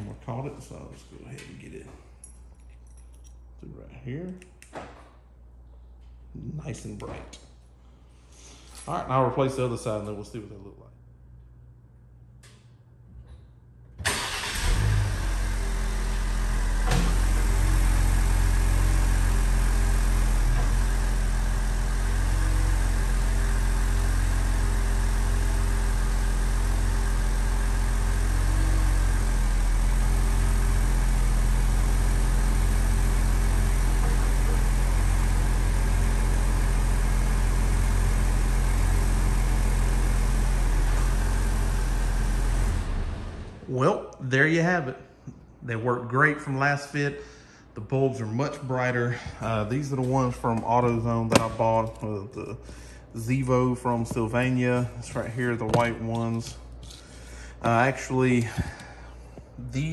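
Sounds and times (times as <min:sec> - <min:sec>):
car engine starting and idling: 0:13.9 - 0:43.8.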